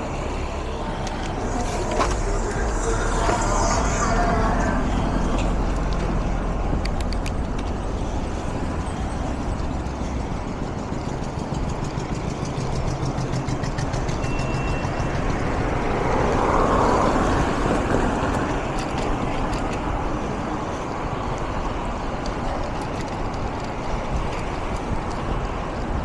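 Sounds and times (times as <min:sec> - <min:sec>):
motor vehicle passing: 0:00.0 - 0:14.2
low traffic rumble: 0:00.0 - 0:26.0.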